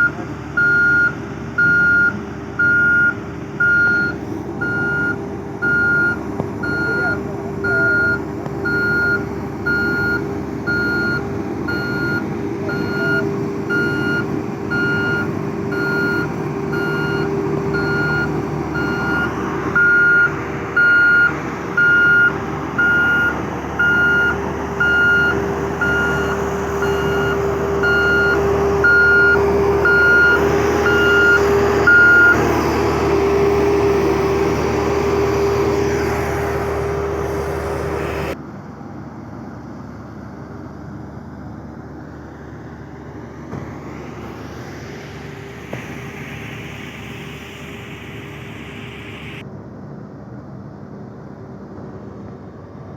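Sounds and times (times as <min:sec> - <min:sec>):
reversing alarm beeping: 0:00.0 - 0:32.6
engine running: 0:00.0 - 0:52.9.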